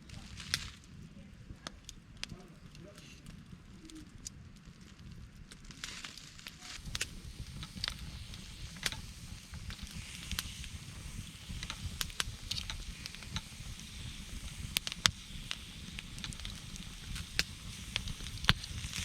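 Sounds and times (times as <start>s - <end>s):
campfire crackling and popping: 0.0s - 19.0s.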